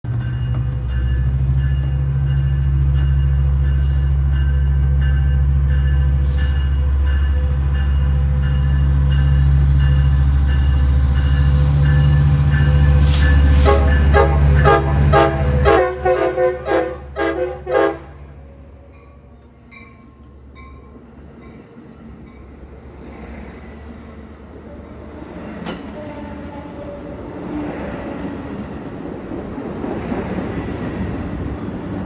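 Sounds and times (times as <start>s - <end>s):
diesel locomotive rumble: 0.0s - 21.4s
train horn blasts: 13.0s - 18.7s.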